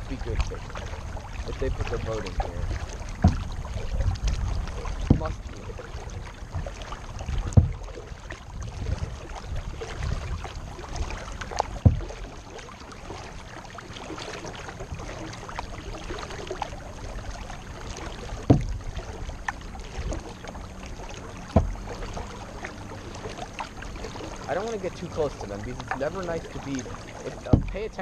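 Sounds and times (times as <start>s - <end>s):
low rumble: 0.0s - 13.1s
paddle blades dipping in water: 0.0s - 28.0s
water splashing and dripping: 0.0s - 28.0s
sharp knocks: 3.2s - 3.5s, 7.5s - 7.8s, 11.8s - 12.2s, 18.4s - 18.8s, 21.5s - 21.8s, 27.5s - 27.8s.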